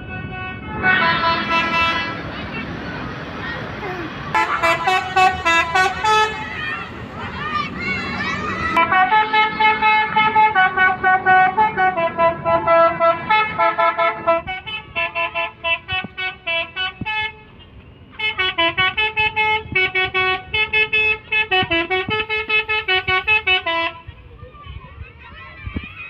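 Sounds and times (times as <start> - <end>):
musical bus air horns: 0.0 - 2.8, 4.3 - 24.1.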